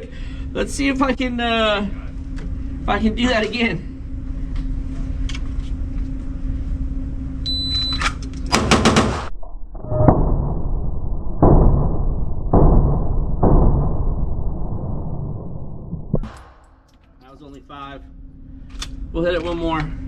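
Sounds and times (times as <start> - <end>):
shot timer beep: 7.5 - 8.0
rapid pistol shots: 8.5 - 9.3.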